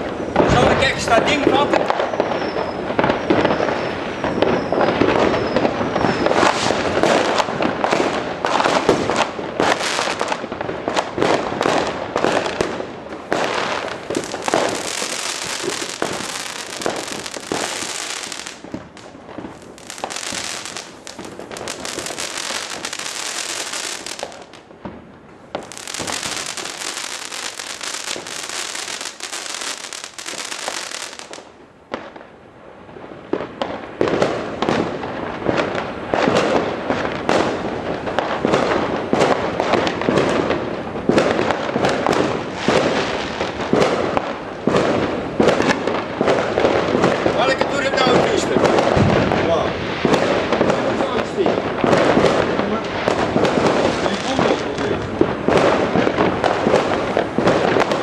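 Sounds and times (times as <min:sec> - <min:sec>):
fireworks crackling and banging: 0:00.0 - 0:58.0
fireworks hissing: 0:12.3 - 0:24.6, 0:25.4 - 0:31.5, 0:47.4 - 0:58.0.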